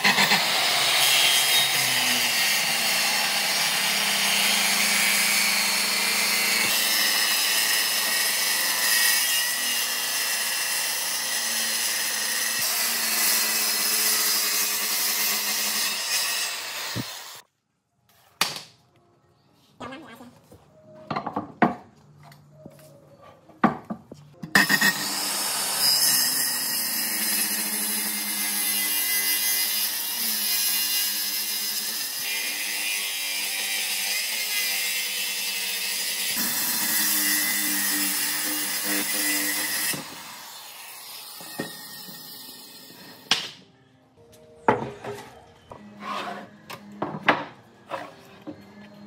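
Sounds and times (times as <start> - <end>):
power tool cutting wood: 0.0 - 17.4, 24.5 - 43.3.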